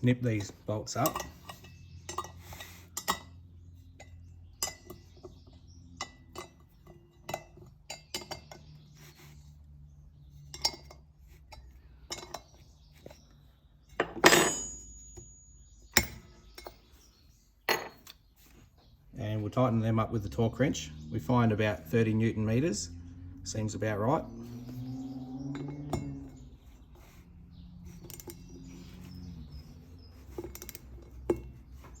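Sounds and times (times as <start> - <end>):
metal tools clinking: 0.0 - 8.8, 10.3 - 12.7, 13.9 - 17.1, 17.7 - 18.2, 25.4 - 26.7, 27.9 - 29.2, 30.1 - 32.0
metallic clank with ring: 14.0 - 16.8, 17.7 - 18.1.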